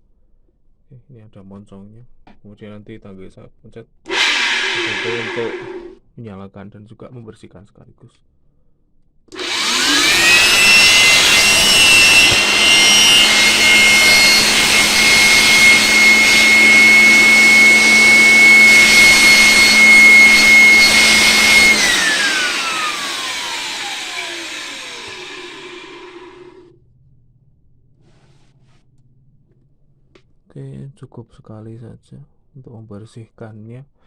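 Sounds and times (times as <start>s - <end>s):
air rushing from blower: 4.1s - 6.0s, 9.4s - 26.7s
electric blower motor whine: 4.1s - 6.0s, 9.3s - 26.8s.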